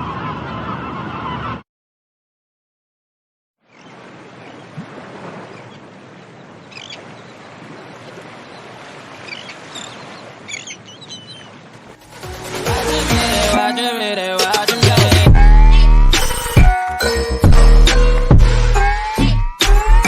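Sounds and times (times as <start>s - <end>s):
seagull calls: 0.0s - 1.6s, 6.7s - 7.1s, 9.2s - 11.7s
surf washing on shore: 3.8s - 14.6s.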